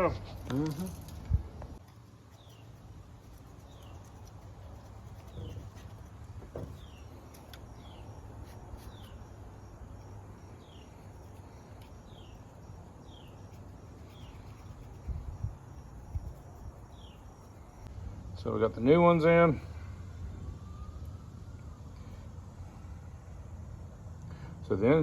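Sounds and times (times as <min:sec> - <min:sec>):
high insect trill: 0:00.0 - 0:18.2
low background hum: 0:00.0 - 0:25.0.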